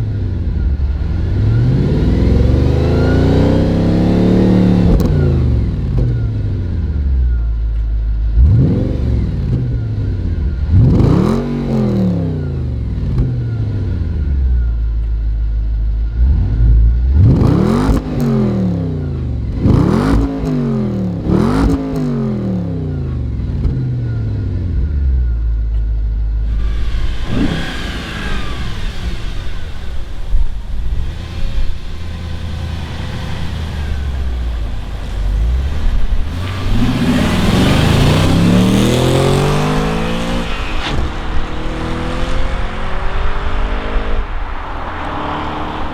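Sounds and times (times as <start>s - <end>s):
car engine revving: 0.0s - 45.9s.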